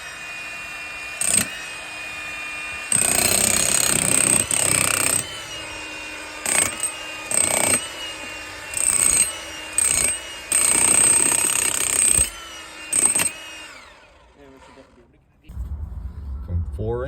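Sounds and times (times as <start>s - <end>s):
power tool bursts: 0.0s - 15.1s.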